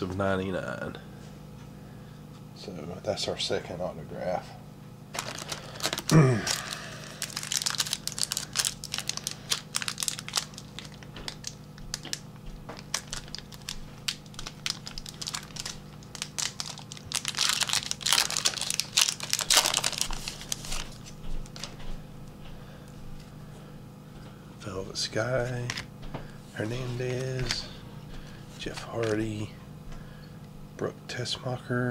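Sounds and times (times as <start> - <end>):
faint steady hum: 0.0 - 31.9
foil wrapper crinkling and tearing: 5.1 - 21.8, 28.6 - 29.5.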